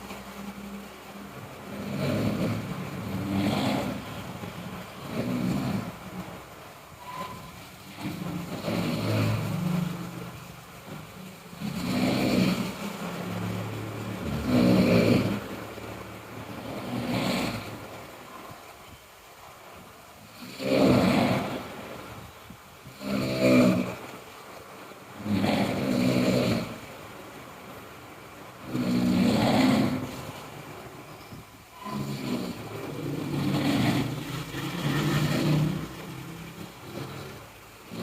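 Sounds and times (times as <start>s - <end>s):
person snoring loudly: 1.6s - 6.2s, 7.8s - 10.4s, 11.5s - 15.8s, 16.4s - 18.2s, 20.2s - 21.9s, 22.8s - 24.0s, 25.2s - 26.9s, 28.6s - 30.4s, 31.8s - 38.0s.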